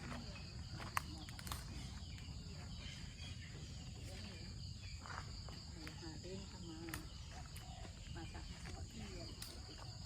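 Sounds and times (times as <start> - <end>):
insects chirring: 0.0 - 10.0.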